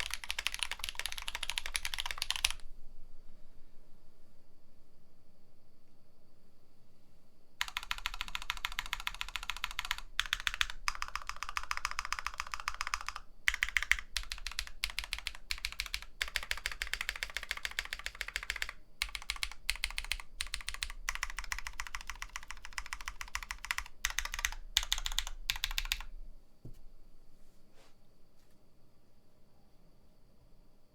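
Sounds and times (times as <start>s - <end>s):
mechanical keyboard typing: 0.0s - 2.6s, 7.6s - 26.1s.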